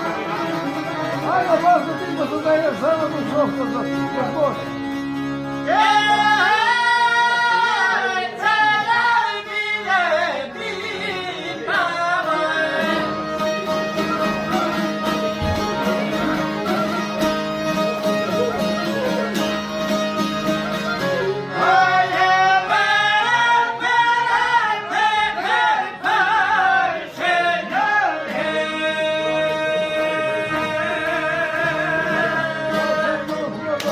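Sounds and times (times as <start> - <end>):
stringed instruments drone: 0.0 - 26.1.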